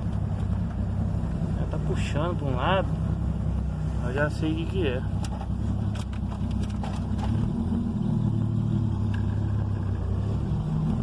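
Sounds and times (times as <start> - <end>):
car engine and exhaust drone: 0.0 - 11.0.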